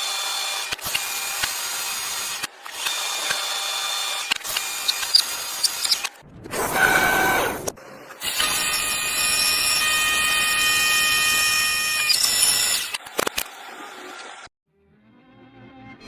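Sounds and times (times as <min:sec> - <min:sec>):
power tool whining: 0:08.2 - 0:13.0.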